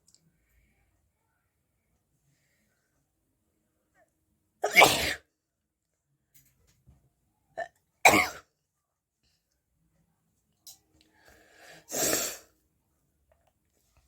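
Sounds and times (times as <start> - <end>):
person sneezing: 4.6 - 5.2, 11.9 - 12.5.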